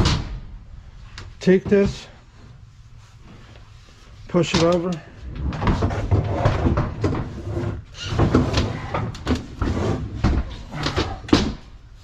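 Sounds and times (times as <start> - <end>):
heavy items knocking and scraping: 4.5 - 11.8.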